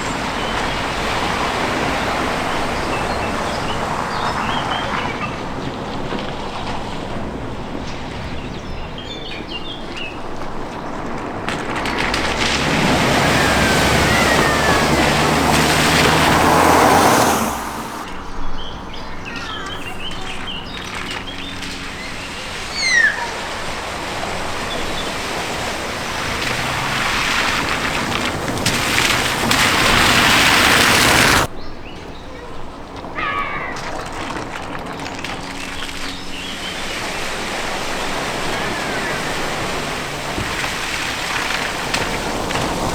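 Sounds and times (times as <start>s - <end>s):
vehicle engine running: 0.0s - 18.1s, 19.9s - 31.5s, 34.8s - 42.9s
vehicle splashing through water: 0.0s - 31.9s, 32.5s - 42.9s
birds chirping: 0.0s - 42.9s.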